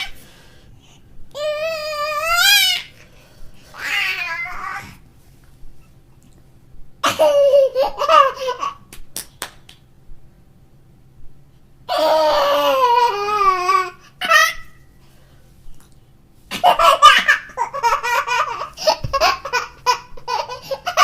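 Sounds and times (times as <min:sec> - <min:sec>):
baby laughing and squealing: 0:01.4 - 0:02.9, 0:03.7 - 0:05.0, 0:07.0 - 0:08.8, 0:11.9 - 0:14.8, 0:16.5 - 0:21.0.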